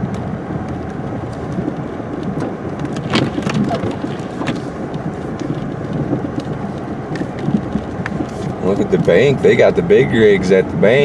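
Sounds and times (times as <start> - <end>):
car engine and tyres rumbling: 0.0 - 11.0.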